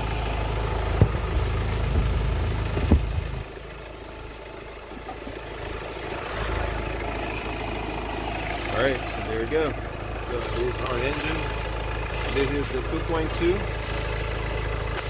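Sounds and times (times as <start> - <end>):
sharp engine knocks: 0.0 - 3.7
diesel engine idling: 0.0 - 15.0.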